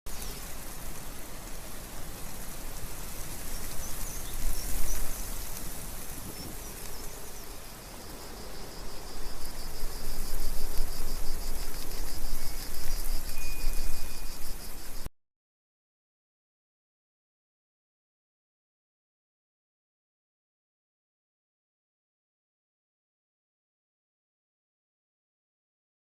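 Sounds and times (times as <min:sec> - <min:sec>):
rain falling: 0:00.1 - 0:08.4, 0:09.2 - 0:15.1
wind gusting over microphone: 0:01.8 - 0:15.0.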